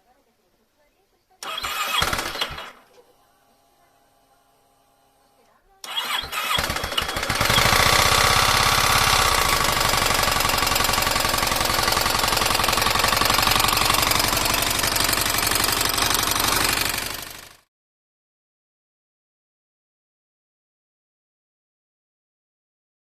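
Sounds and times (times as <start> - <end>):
motorcycle engine running: 5.9 - 17.6.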